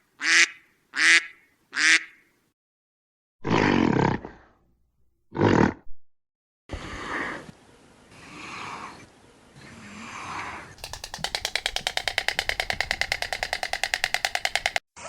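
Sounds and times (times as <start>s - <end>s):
fast pulsing animal call: 10.8s - 14.8s.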